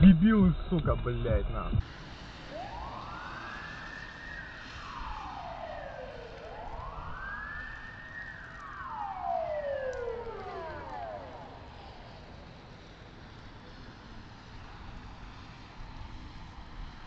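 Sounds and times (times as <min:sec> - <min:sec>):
road rumble: 0:00.0 - 0:15.1
siren wailing: 0:02.4 - 0:12.4.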